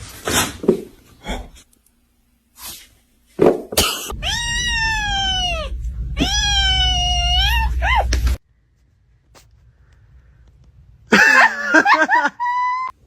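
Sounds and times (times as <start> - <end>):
cat meowing: 4.1 - 8.3.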